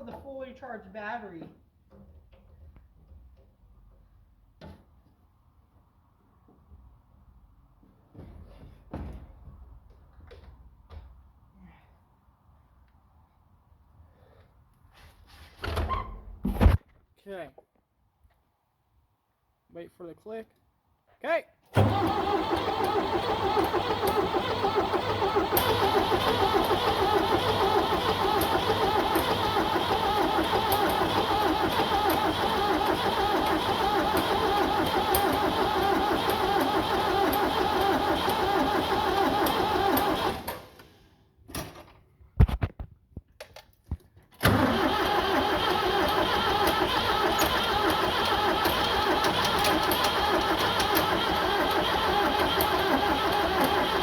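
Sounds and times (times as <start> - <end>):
tractor engine cranking: 21.8 - 40.8, 44.4 - 54.0.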